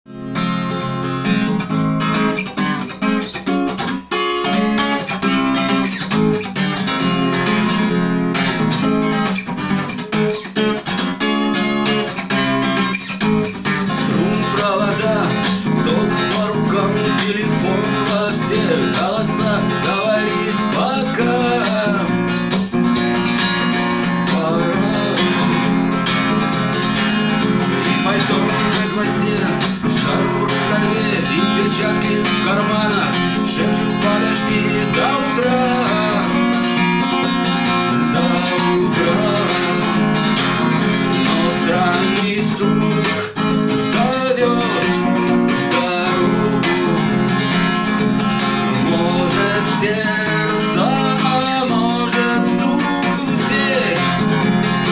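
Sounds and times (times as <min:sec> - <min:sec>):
acoustic guitar strumming: 0:00.1 - 0:54.9
person singing: 0:13.8 - 0:22.6, 0:23.5 - 0:54.9.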